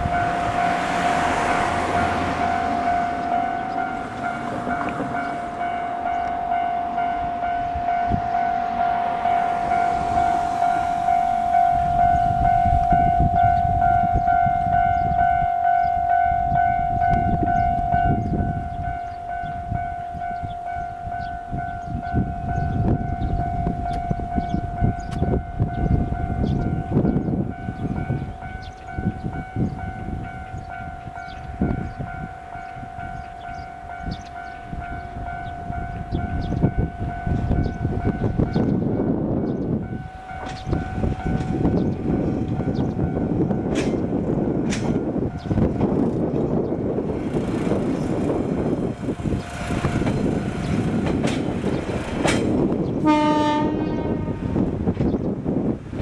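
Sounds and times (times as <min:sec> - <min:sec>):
train wheels clicking over rail joints: 0:00.0 - 0:06.5, 0:40.2 - 0:53.0
level-crossing warning bell: 0:00.0 - 0:55.8
diesel railcar rumbling: 0:00.0 - 0:56.0.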